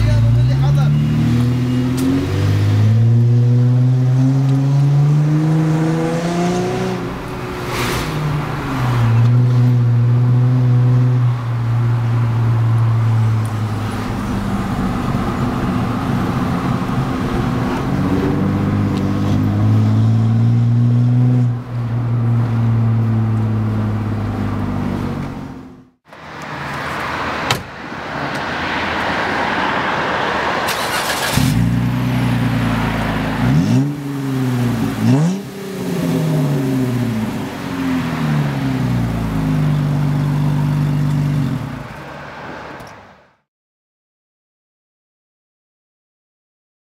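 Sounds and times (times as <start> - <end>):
engine revving: 0.0 - 11.4, 13.2 - 21.5, 30.6 - 41.7
car engine and exhaust running: 30.8 - 42.0.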